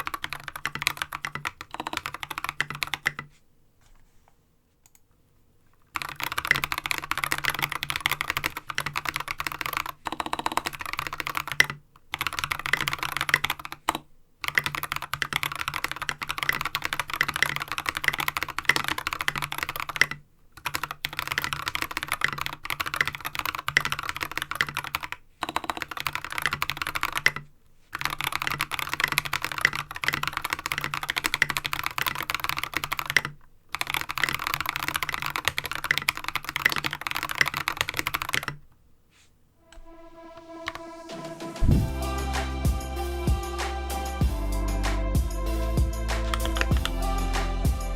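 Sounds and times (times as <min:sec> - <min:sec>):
typing on mechanical keyboard: 0:00.0 - 0:03.3, 0:05.8 - 0:38.7, 0:46.2 - 0:47.0.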